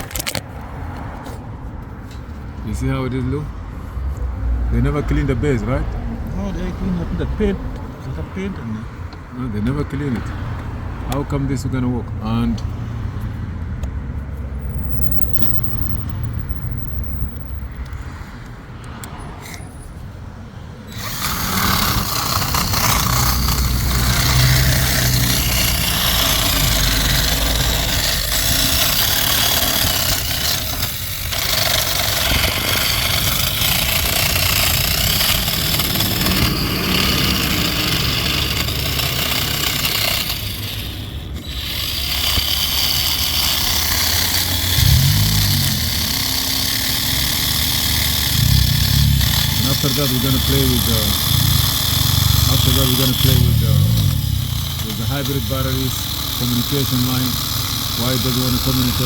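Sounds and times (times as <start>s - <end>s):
power tool grinding metal: 14.6s - 17.7s, 20.8s - 59.0s
low hum: 14.6s - 17.8s.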